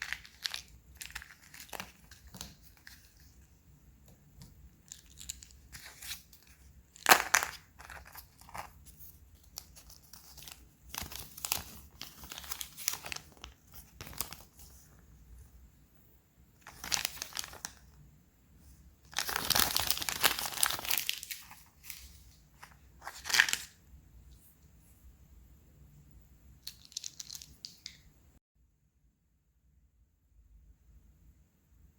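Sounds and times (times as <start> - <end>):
wrappers crinkling and tearing: 19.1 - 22.0.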